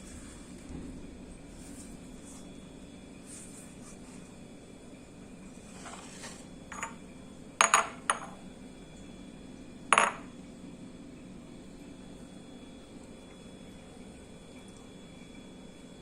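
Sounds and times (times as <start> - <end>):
utensil clinking against dish: 6.7 - 7.0.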